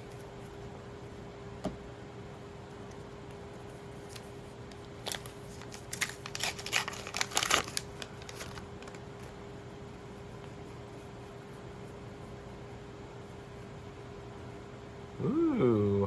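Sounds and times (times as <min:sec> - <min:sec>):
faint steady hum: 0:00.0 - 0:16.0
wrapper crinkling: 0:04.1 - 0:09.3.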